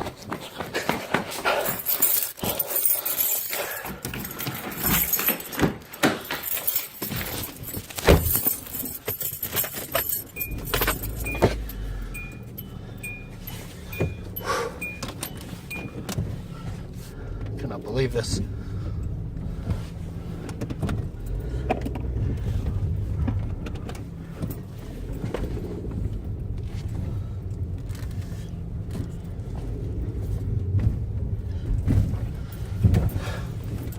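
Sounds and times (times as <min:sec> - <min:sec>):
car keys jangling: 0:01.3 - 0:33.9
car engine running: 0:01.5 - 0:33.9
chime beeping: 0:10.2 - 0:16.1.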